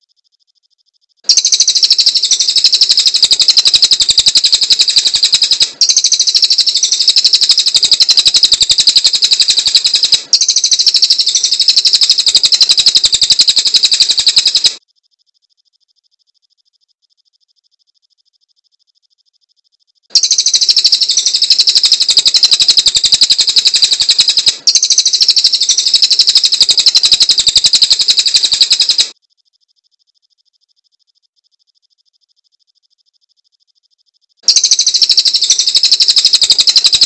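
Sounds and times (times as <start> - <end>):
bird chattering trill: 1.3 - 14.8, 20.1 - 29.2, 34.4 - 37.0.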